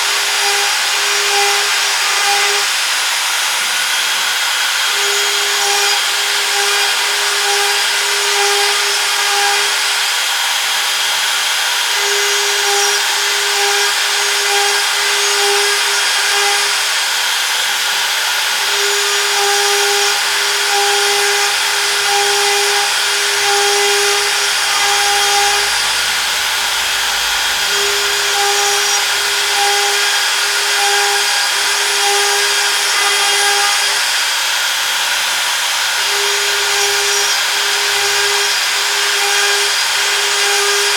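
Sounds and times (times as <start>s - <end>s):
cnc router spindle cutting: 0.0s - 40.9s.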